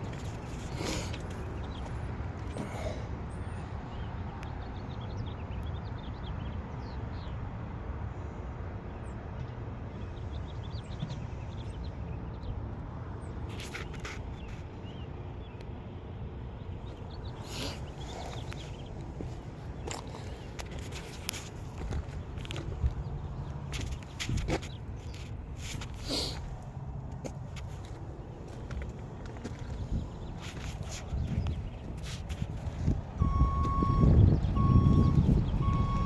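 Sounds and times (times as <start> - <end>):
small birds chirping: 0.2 - 7.4, 8.9 - 26.7, 27.4 - 32.9
steady low rumble: 14.8 - 36.0.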